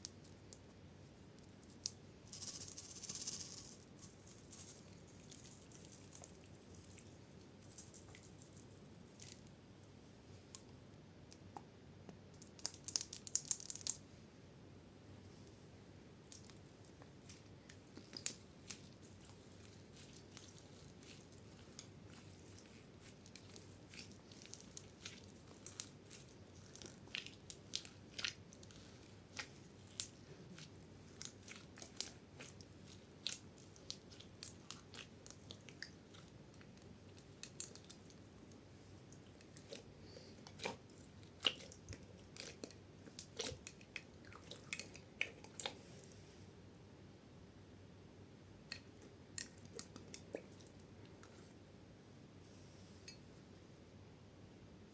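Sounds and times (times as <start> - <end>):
slime crackling and popping: 17.9 - 38.0.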